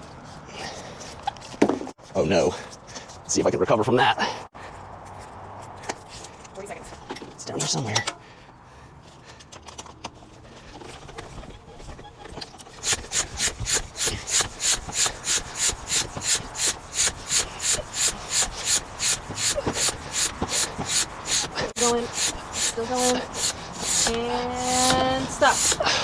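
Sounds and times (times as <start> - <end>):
bicycle pump strokes hissing: 12.8 - 26.0
rubbing bicycle tire on rim: 12.8 - 26.0.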